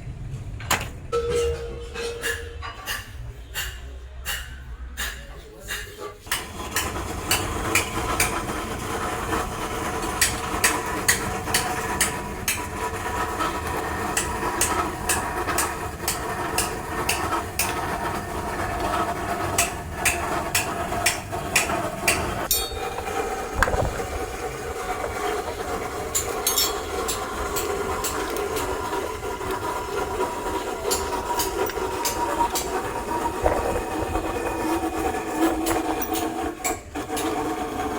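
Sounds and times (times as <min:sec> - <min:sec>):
steady machine hum: 0:00.0 - 0:03.2, 0:06.3 - 0:37.8
hammer blows on metal: 0:01.1 - 0:08.4.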